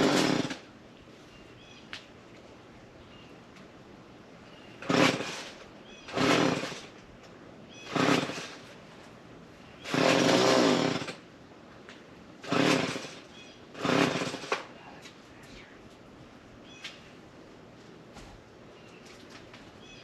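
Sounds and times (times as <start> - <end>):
chainsaw cutting: 0.0 - 0.7, 4.8 - 7.0, 7.8 - 8.8, 9.8 - 11.3, 12.4 - 14.8.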